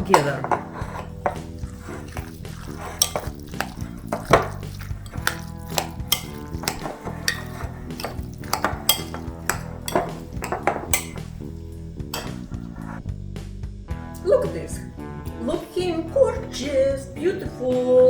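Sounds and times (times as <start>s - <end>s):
spoon clinking against a dish: 0.0s - 11.5s, 12.1s - 13.0s
quiet background music: 0.0s - 18.0s.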